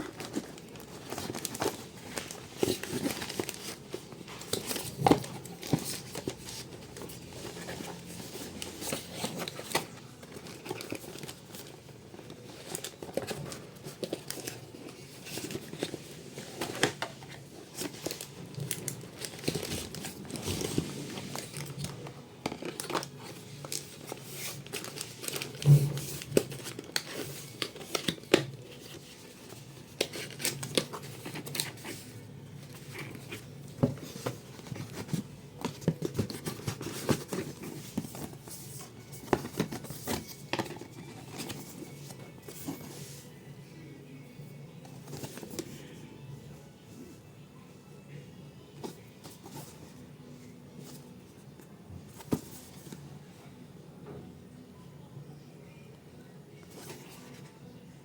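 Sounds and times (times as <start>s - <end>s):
crinkling plastic and cardboard: 0.0s - 43.3s, 44.8s - 46.0s.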